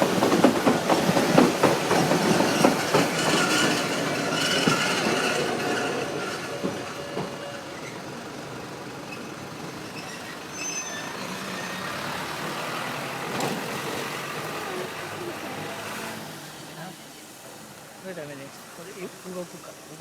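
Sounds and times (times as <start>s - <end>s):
high squeal: 9.1s - 12.0s.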